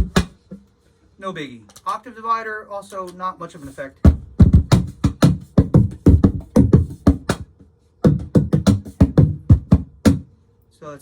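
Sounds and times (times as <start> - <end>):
amplified cajon strikes: 0.0 - 0.8, 4.0 - 10.3.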